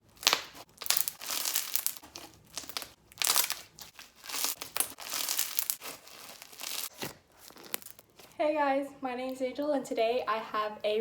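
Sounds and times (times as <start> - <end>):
crinkling handling noise: 0.0 - 8.4.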